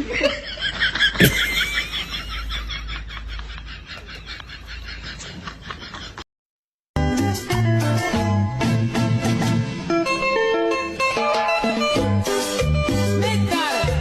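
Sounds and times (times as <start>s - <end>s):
guitar music: 7.0s - 14.0s.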